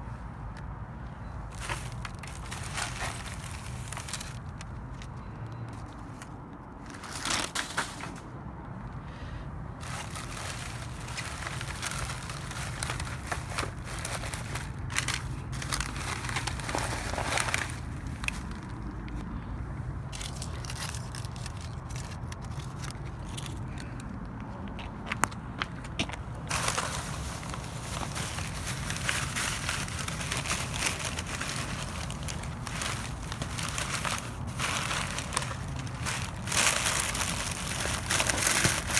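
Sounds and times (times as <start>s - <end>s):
plastic bags crinkling: 1.5s - 4.7s, 9.8s - 19.0s, 26.5s - 38.9s.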